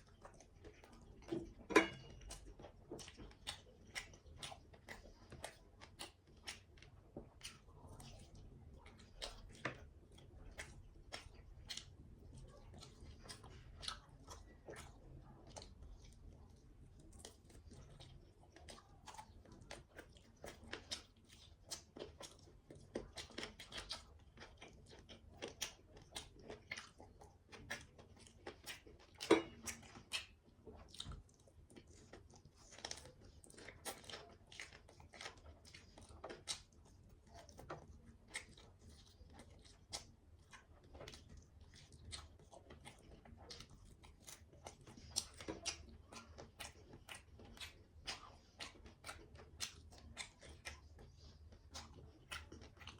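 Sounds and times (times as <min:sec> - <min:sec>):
person chewing food: 0:00.0 - 0:52.9.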